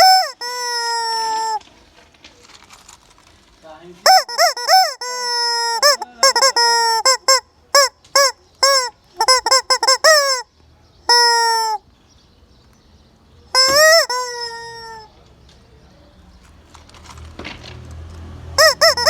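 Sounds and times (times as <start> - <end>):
rubber chicken toy squawking: 0.0 - 1.6, 4.0 - 10.5, 11.1 - 11.8, 13.5 - 15.1, 18.6 - 19.0.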